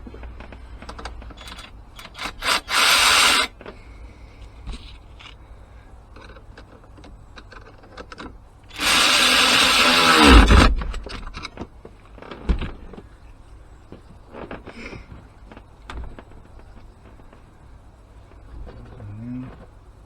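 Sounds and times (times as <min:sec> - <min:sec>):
power drill running: 0:01.4 - 0:03.5, 0:08.7 - 0:10.7.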